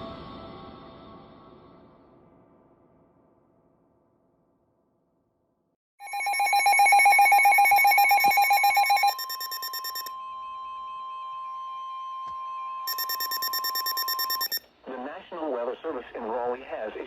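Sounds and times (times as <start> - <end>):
rapidly pulsing alarm beep: 6.0 - 10.1, 12.9 - 14.6
steady attention tone: 6.0 - 11.0, 12.9 - 14.6.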